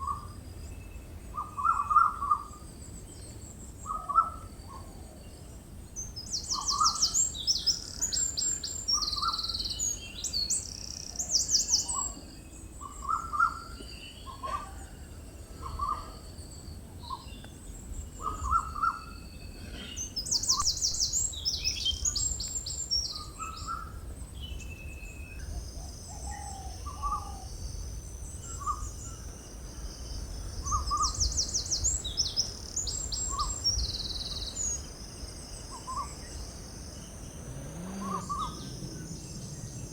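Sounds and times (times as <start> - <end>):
bird trilling: 35.7 - 39.9
low rumble: 36.4 - 39.9.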